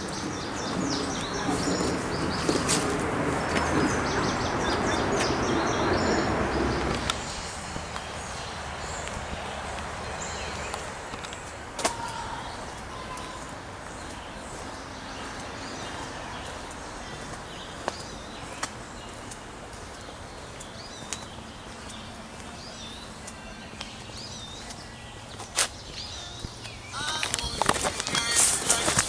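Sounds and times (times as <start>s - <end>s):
airplane drone overhead: 0.0s - 29.0s
bird calls and chirps: 0.0s - 29.0s.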